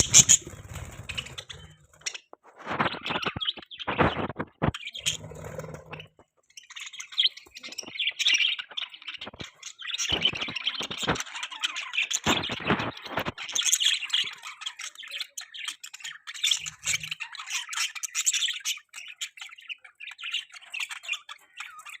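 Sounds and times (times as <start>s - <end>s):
budgerigars chattering: 0.0s - 2.2s.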